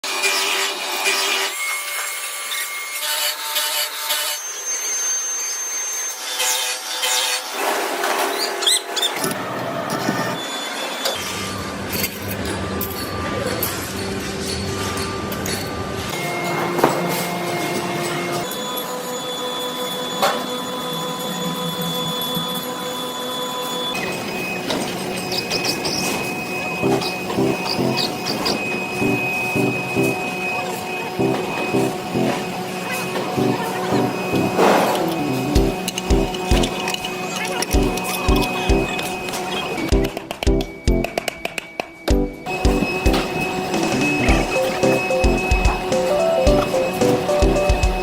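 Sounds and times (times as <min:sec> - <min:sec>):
workshop machinery whine: 0:15.8 - 0:22.0, 0:26.5 - 0:48.0.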